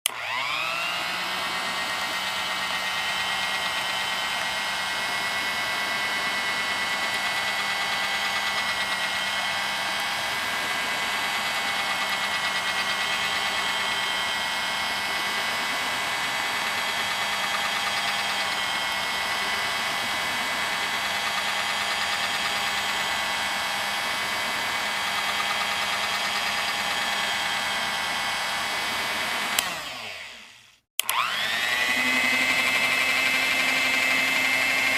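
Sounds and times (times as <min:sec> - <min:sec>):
blender motor whining: 0:00.0 - 0:34.9
blender switch click: 0:29.5 - 0:30.1, 0:31.0 - 0:31.7.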